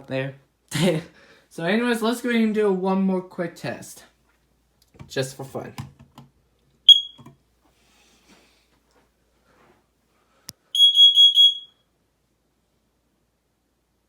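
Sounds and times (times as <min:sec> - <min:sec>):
smoke alarm beeps: 0:06.9 - 0:07.3, 0:10.8 - 0:11.8.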